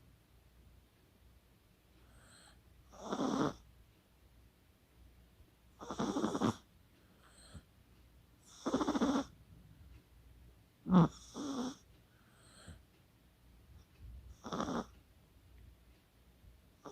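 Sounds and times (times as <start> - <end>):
dog snoring: 2.0 - 3.6, 5.8 - 7.7, 8.4 - 9.3, 10.8 - 12.8, 14.3 - 14.9.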